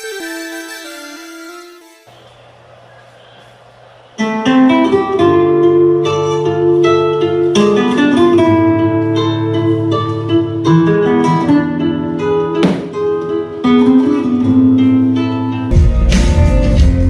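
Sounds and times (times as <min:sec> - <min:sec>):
plucked acoustic guitar: 0:04.2 - 0:17.0
steady bass line: 0:15.7 - 0:17.0.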